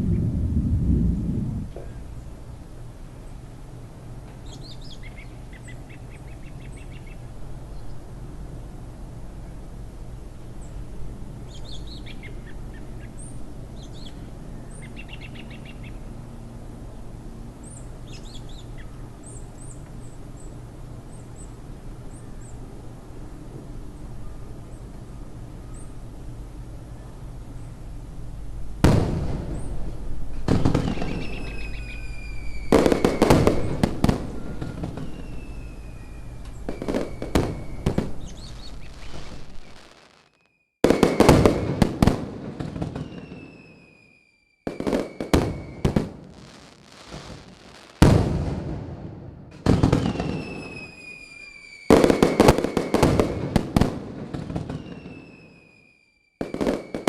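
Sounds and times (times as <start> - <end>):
fireworks crackling: 28.6 - 44.0, 44.7 - 57.0
fireworks bursting: 28.8 - 57.0
falling whistles: 30.8 - 41.4, 42.9 - 47.5, 49.9 - 53.2, 54.6 - 57.0.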